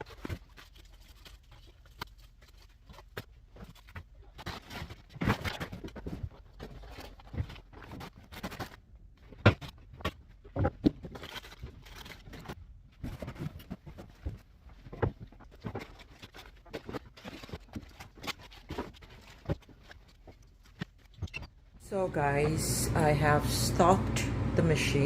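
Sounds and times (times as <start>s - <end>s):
packets rustling: 10.5s - 21.4s.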